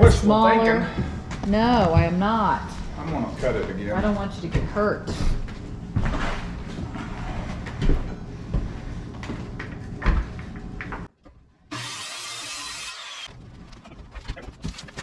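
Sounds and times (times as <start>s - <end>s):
power saw cutting: 11.7s - 13.3s.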